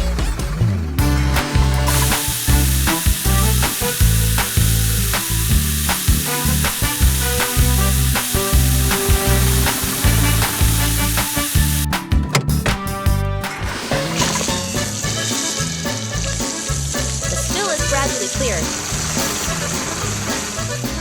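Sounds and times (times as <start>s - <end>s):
bouncy cartoon music: 0.0s - 21.0s
steady hissing: 1.9s - 11.9s.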